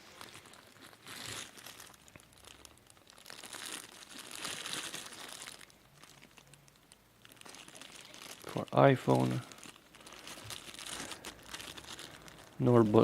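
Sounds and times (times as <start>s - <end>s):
packaging crinkling and rustling: 0.0s - 13.0s.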